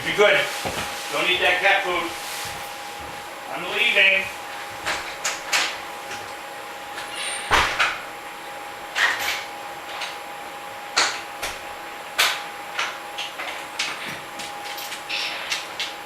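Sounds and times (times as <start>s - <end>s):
door shutting: 7.0s - 8.0s.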